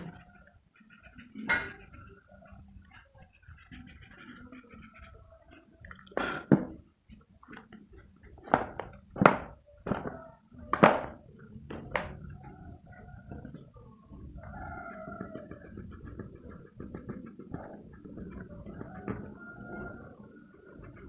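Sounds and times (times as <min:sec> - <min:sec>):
pencil strokes on paper: 0:00.0 - 0:09.6.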